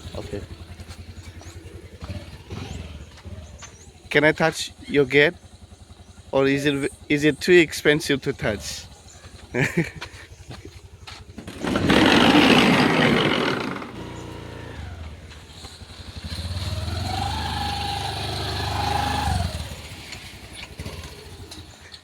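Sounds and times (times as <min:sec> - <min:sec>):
vehicle engine rising in pitch: 0:00.0 - 0:04.2, 0:11.6 - 0:21.7.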